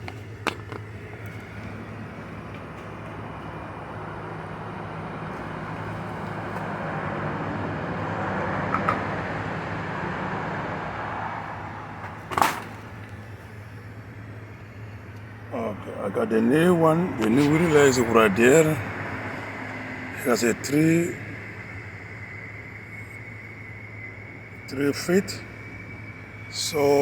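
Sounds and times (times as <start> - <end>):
steady low hum: 0.0 - 27.0
vehicle passing by: 1.3 - 13.3.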